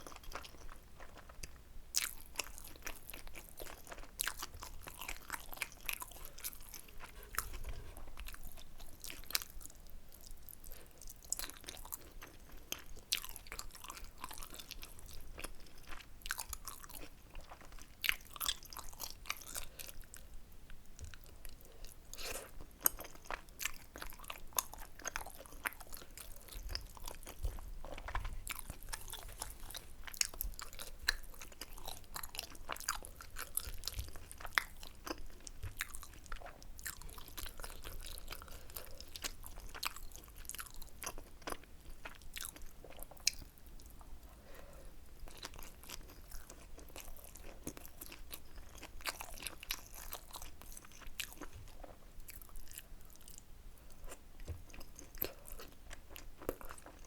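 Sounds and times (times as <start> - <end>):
close-miked chewing: 0.0 - 57.0.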